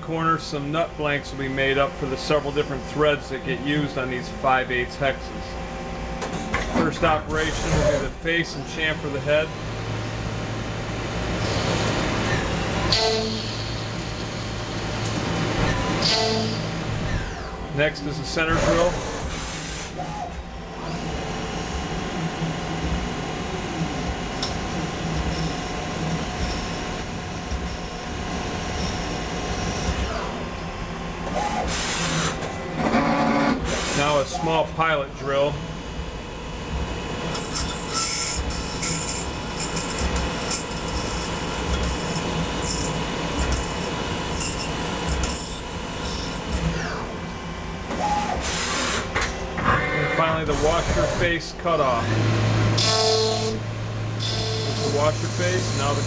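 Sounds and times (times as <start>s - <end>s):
metal lathe humming and whirring: 0.0s - 56.0s
drill cutting metal: 18.4s - 20.2s, 37.3s - 47.1s, 48.2s - 49.2s, 52.1s - 53.6s, 54.2s - 56.0s.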